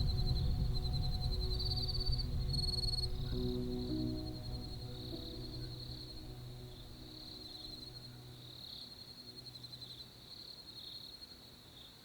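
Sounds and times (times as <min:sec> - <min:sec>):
faint low tones: 0:00.0 - 0:09.4.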